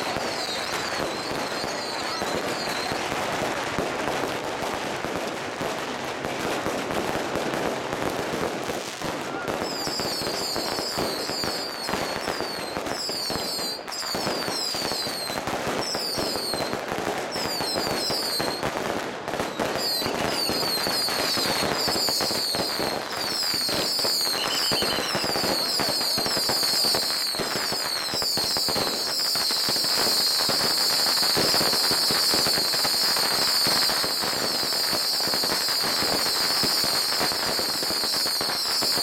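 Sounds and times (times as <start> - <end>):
high falling firework whistles: 0.0 - 3.4, 9.3 - 18.7, 19.4 - 39.0
firecrackers banging: 17.6 - 39.0.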